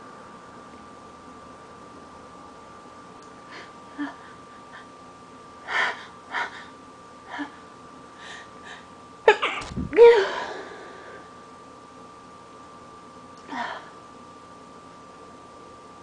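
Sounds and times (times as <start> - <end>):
person sneezing: 9.3 - 10.6.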